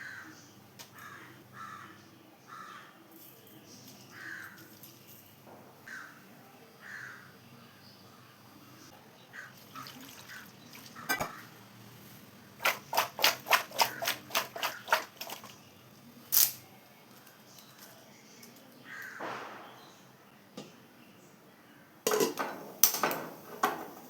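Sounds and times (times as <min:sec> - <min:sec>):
sharp kitchen knocks: 0:19.2 - 0:19.9.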